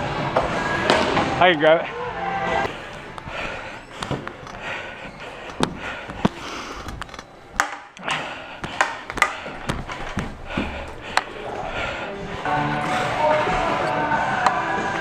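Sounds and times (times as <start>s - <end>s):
hockey sticks and puck knocking: 2.7s - 12.1s.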